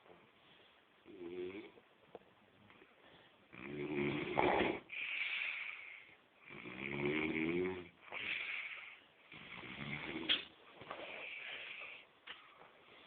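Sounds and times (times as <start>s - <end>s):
man snoring: 1.1s - 1.8s, 3.5s - 5.7s, 6.4s - 10.3s.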